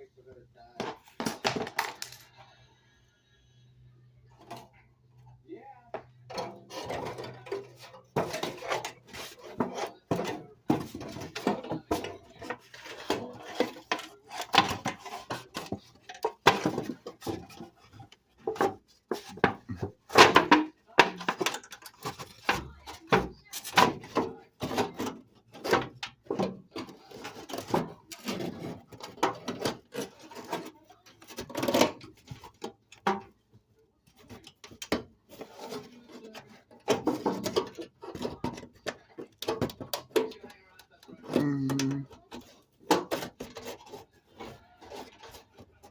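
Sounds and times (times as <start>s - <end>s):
knocks and clatter of hand work: 0.8s - 2.3s, 5.9s - 33.4s, 34.0s - 45.9s.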